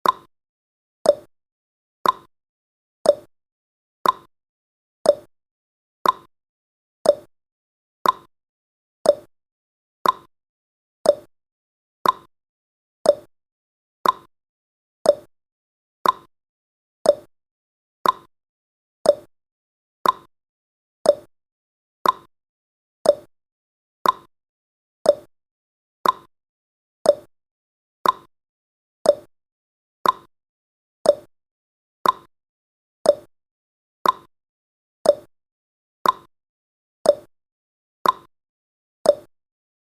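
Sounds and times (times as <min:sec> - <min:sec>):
clock ticking: 0:02.0 - 0:02.3, 0:04.0 - 0:04.3, 0:06.0 - 0:06.3, 0:08.0 - 0:08.3, 0:10.0 - 0:10.3, 0:12.0 - 0:12.3, 0:14.0 - 0:14.3, 0:16.0 - 0:16.3, 0:18.0 - 0:18.3, 0:20.0 - 0:20.3, 0:21.1 - 0:21.3, 0:22.0 - 0:22.3, 0:24.0 - 0:24.3, 0:26.0 - 0:26.3, 0:28.0 - 0:28.3, 0:29.1 - 0:29.3, 0:30.0 - 0:30.3, 0:31.1 - 0:31.3, 0:32.0 - 0:32.3, 0:33.1 - 0:33.3, 0:34.0 - 0:34.3, 0:35.1 - 0:35.3, 0:36.0 - 0:36.3, 0:38.0 - 0:38.3.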